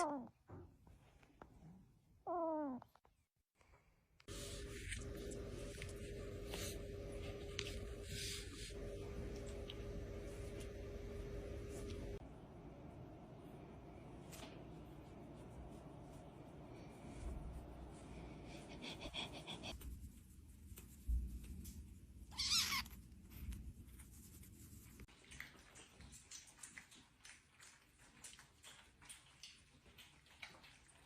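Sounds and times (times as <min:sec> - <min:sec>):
kitten meowing: 0:22.3 - 0:23.0.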